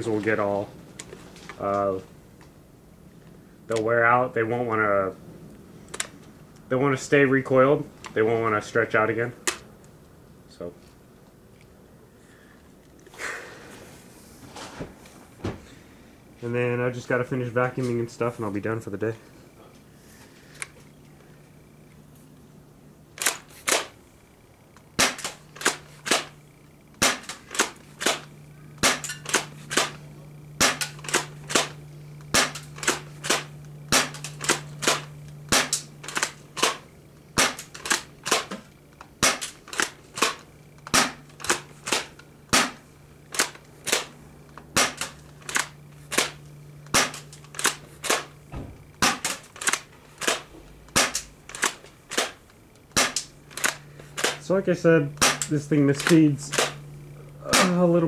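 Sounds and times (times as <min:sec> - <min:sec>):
faint steady hum: 0:00.0 - 0:58.0
airsoft shotgun pumping and firing: 0:23.2 - 0:24.0, 0:24.8 - 0:26.4, 0:27.0 - 0:30.0, 0:30.6 - 0:36.8, 0:37.4 - 0:48.3, 0:48.9 - 0:54.4, 0:55.2 - 0:56.8, 0:57.5 - 0:57.8.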